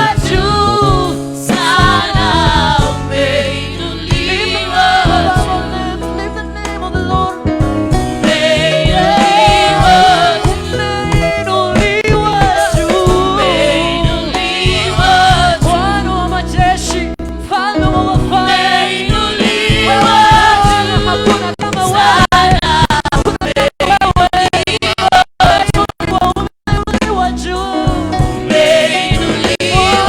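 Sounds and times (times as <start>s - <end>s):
voices singing praise song: 0.0s - 6.9s, 8.0s - 25.9s, 27.1s - 30.0s
instrumental backing: 0.0s - 24.8s, 26.0s - 30.0s.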